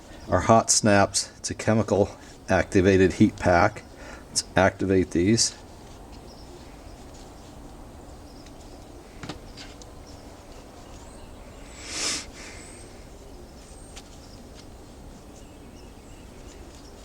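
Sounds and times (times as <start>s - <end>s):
outdoor background noise: 0.0s - 17.0s
heat packs rustling: 5.6s - 17.0s.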